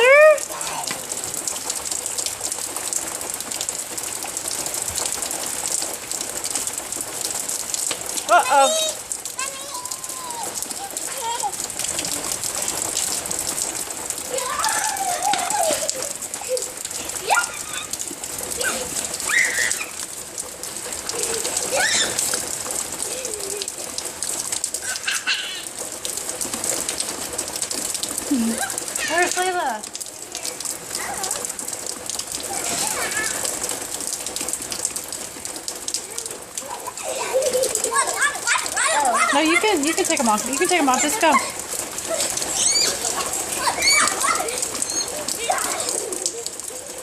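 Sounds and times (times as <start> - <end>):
rain pattering: 0.0 - 47.0
high-pitched gliding cries: 41.2 - 45.3.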